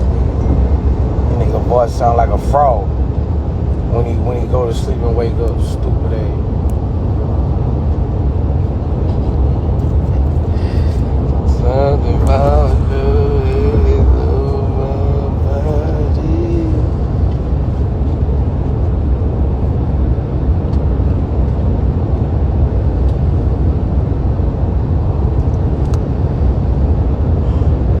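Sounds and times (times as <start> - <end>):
vehicle cabin road and engine noise: 0.0 - 28.0.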